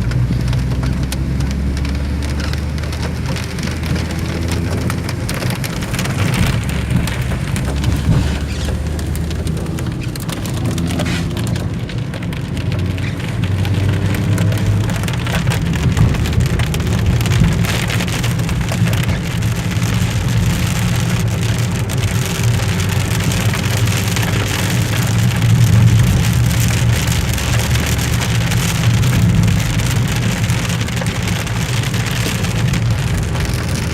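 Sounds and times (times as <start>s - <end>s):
low rumble: 0.0s - 20.6s
heavy rain pattering: 0.0s - 33.9s.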